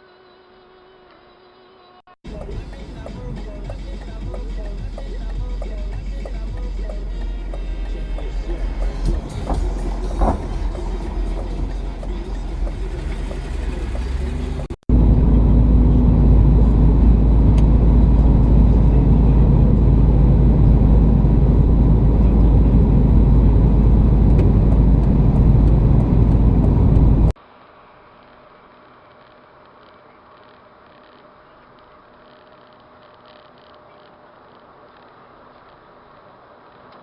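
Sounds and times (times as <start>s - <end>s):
car engine running: 2.3s - 27.4s.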